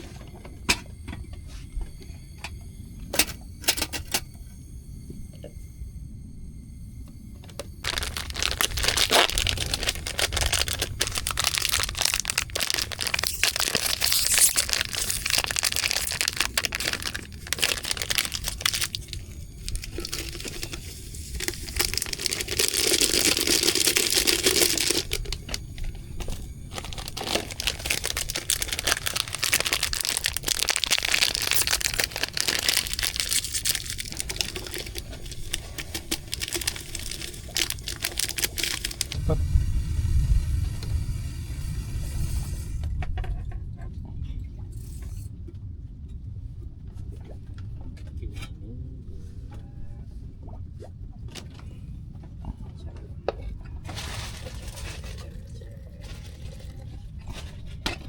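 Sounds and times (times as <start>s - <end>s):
crinkling crackling rustle: 7.5s - 39.2s, 52.7s - 57.9s.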